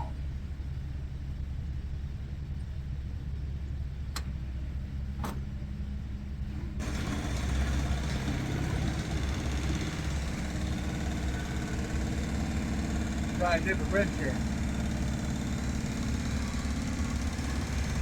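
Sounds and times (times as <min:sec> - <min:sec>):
diesel truck engine idling: 0:00.0 - 0:18.0.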